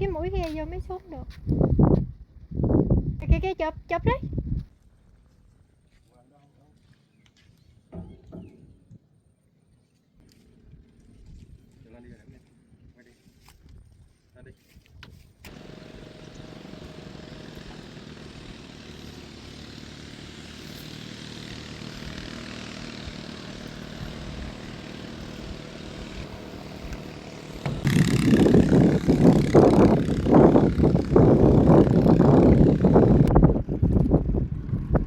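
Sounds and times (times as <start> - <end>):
wind buffeting microphone: 0.0 - 4.7, 22.9 - 35.0
boat engine running: 15.5 - 35.0.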